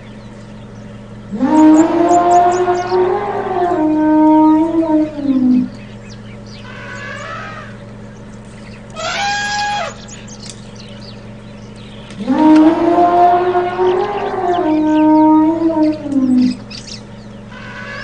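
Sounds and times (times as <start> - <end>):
elephant calling: 0.0 - 10.4, 11.2 - 18.0
steady low hum: 0.0 - 18.0
elephant trumpeting: 1.3 - 5.8, 6.6 - 7.9, 8.9 - 10.1, 12.2 - 16.7, 17.4 - 18.0.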